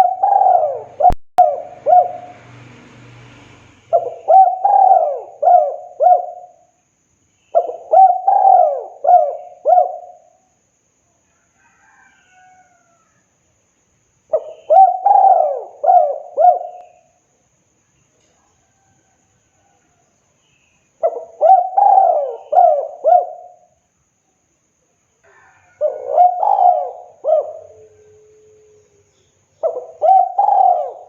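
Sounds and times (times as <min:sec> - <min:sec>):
dove cooing: 0:00.0 - 0:02.4, 0:03.9 - 0:06.7, 0:07.5 - 0:10.4, 0:14.3 - 0:17.1, 0:21.0 - 0:23.7, 0:25.3 - 0:28.8, 0:29.6 - 0:31.0.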